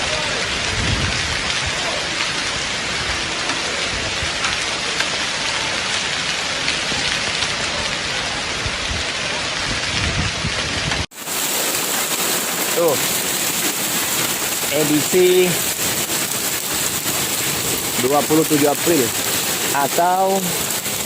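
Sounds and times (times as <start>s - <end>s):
heavy rain downpour: 0.0s - 21.0s
hail ticking: 11.0s - 21.0s.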